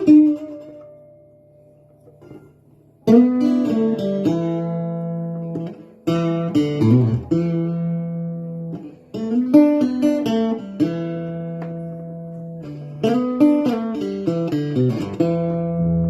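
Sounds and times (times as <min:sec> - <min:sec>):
acoustic guitar chords: 0:13.0 - 0:16.0.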